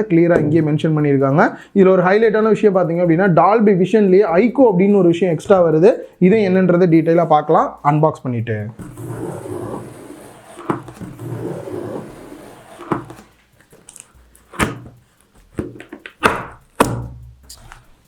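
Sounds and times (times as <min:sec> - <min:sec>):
cardboard rustling: 0:08.8 - 0:16.2
cardboard box knocks and thunks: 0:09.8 - 0:13.3, 0:14.5 - 0:15.0.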